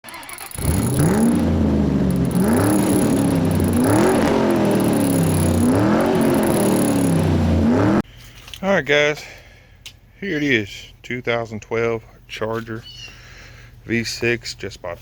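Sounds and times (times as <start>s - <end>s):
car engine revving: 0.5s - 8.0s.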